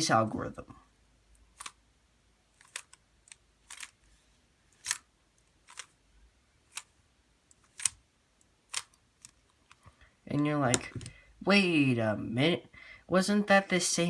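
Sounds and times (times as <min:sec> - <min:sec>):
puzzle cube turning clicks: 0:01.3 - 0:01.8, 0:02.5 - 0:04.1, 0:04.7 - 0:06.0, 0:06.6 - 0:09.9.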